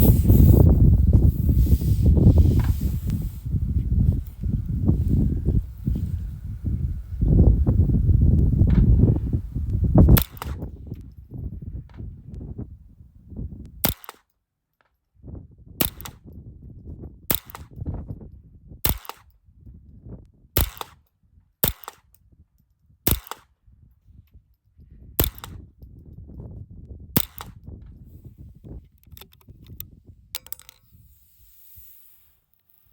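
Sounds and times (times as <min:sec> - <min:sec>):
wind rumble on microphone: 0:00.0 - 0:14.0, 0:15.2 - 0:32.0
rifle shots: 0:10.2 - 0:10.6, 0:13.8 - 0:14.2, 0:18.9 - 0:19.2, 0:20.6 - 0:21.0, 0:21.6 - 0:22.0, 0:23.1 - 0:23.4.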